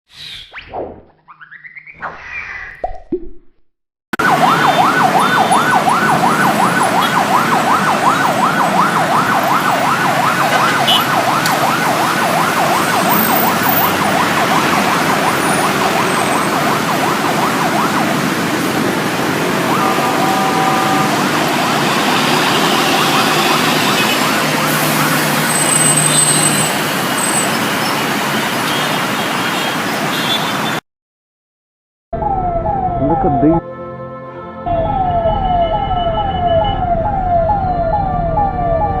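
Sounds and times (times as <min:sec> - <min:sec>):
ambulance siren yelping: 0:04.2 - 0:27.6, 0:32.2 - 0:33.8, 0:34.7 - 0:39.0
heavy traffic noise: 0:04.2 - 0:30.8, 0:32.2 - 0:39.0
short steady horn-like tone: 0:19.7 - 0:21.3.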